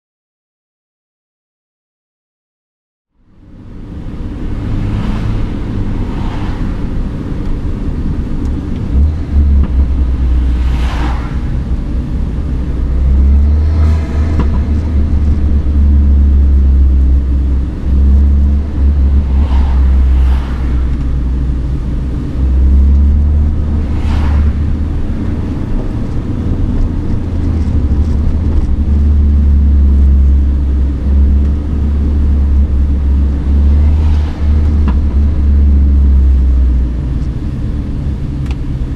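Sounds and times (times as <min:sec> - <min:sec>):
car engine drone under load: 0:03.1 - 0:38.9
intake rush: 0:03.4 - 0:38.9.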